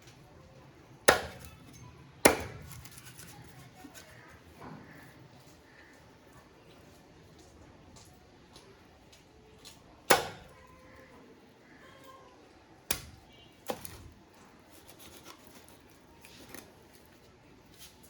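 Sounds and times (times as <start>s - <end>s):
knife chopping fish: 1.1s - 1.6s, 10.1s - 10.5s
knife scraping cutting surface: 2.6s - 4.1s, 14.7s - 16.6s.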